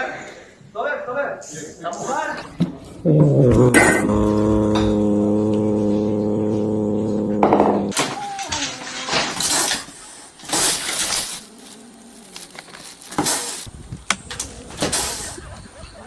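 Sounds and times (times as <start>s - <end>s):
steady pitched hum: 3.4s - 7.9s.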